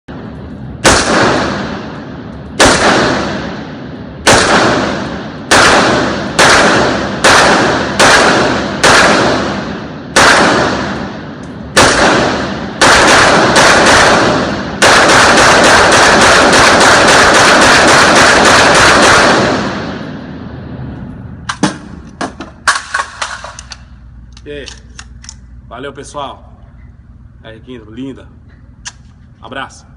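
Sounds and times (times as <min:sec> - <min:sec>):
rifle gunshots: 0:00.8 - 0:20.4.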